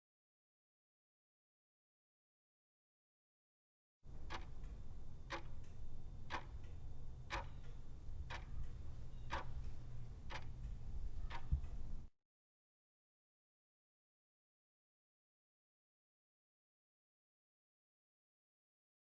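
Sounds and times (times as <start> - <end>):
clock ticking: 4.1 - 12.1
low steady hum: 4.1 - 12.1.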